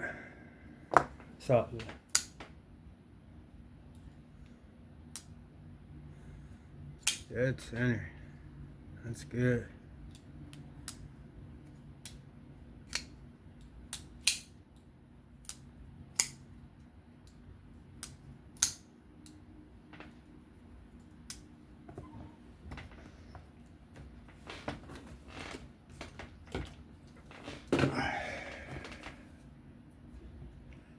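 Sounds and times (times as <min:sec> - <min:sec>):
folding knife clicks: 0:18.0 - 0:19.4.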